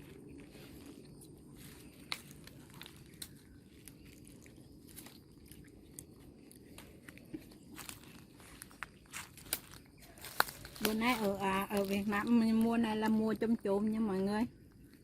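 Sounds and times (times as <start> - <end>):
monkey chewing fruit: 0.0 - 8.4
fruit peel crackling: 0.0 - 13.1.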